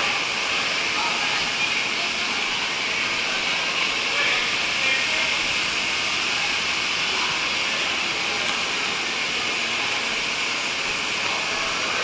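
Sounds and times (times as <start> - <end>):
loud machinery hiss: 0.0 - 12.0.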